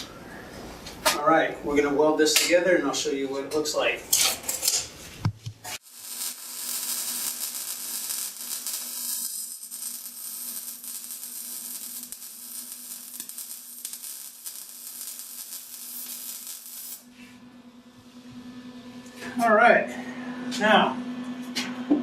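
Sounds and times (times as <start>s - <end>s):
welding arc crackling sizzle: 5.7s - 19.6s.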